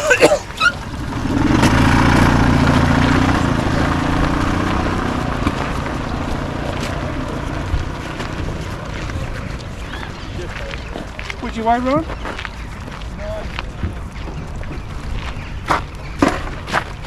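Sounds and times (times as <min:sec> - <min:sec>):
vehicle engine running: 0:00.0 - 0:10.7.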